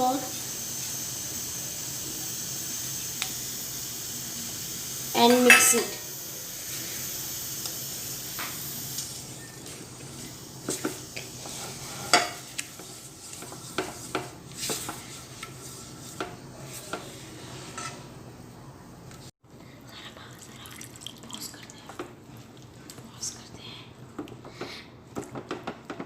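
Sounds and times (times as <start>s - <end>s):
roux sizzling in a pan: 0.0s - 18.2s
spoon scraping a pan: 5.4s - 5.9s, 10.7s - 18.1s.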